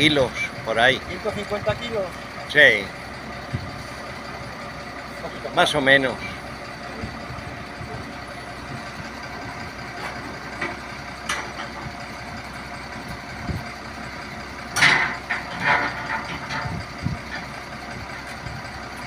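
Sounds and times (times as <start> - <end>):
vehicle engine idling: 0.0 - 19.0.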